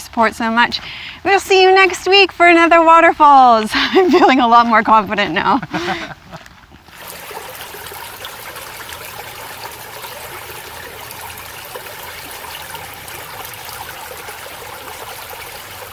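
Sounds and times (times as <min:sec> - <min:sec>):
small waterfall and stream: 0:06.0 - 0:15.9.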